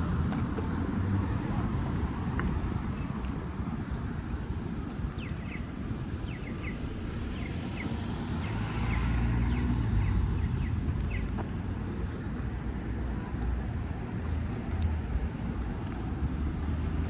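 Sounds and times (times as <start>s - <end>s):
city street traffic rumble: 0.0s - 17.0s
vehicle passing: 6.7s - 12.2s, 14.3s - 17.0s.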